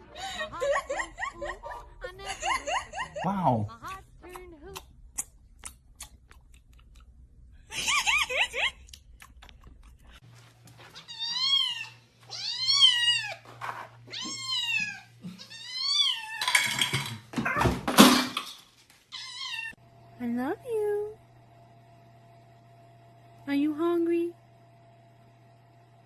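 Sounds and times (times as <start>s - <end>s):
cat meowing: 11.0s - 13.4s, 14.1s - 16.5s, 19.1s - 19.8s.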